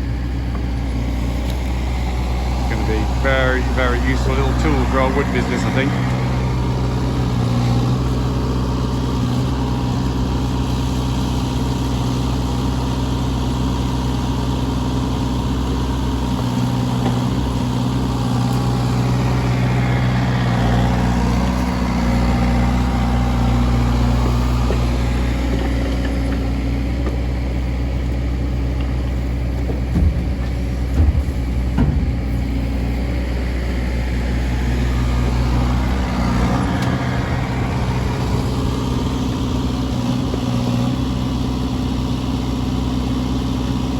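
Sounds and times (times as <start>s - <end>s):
diesel engine running: 0.0s - 43.9s
short knocks: 29.6s - 33.0s.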